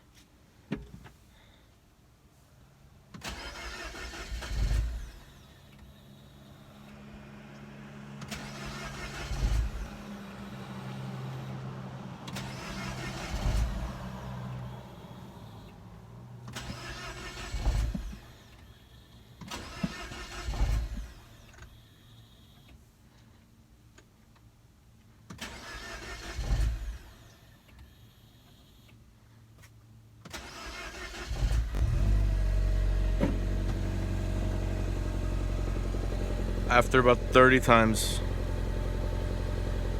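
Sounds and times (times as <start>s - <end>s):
car engine cranking: 3.1s - 21.9s, 25.3s - 27.9s, 30.3s - 39.9s
low engine thump: 33.1s - 33.9s.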